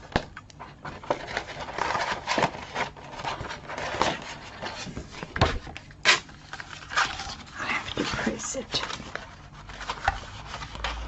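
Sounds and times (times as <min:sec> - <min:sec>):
paper rubbing and rustling: 0:00.6 - 0:11.0.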